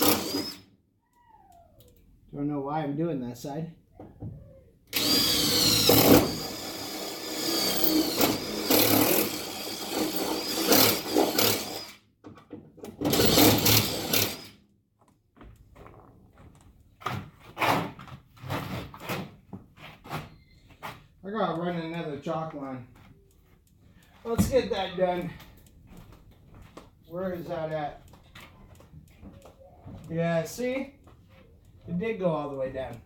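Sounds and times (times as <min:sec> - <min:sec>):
power tool whining on sheet metal: 0:00.0 - 0:00.7, 0:04.9 - 0:12.1, 0:13.0 - 0:14.6.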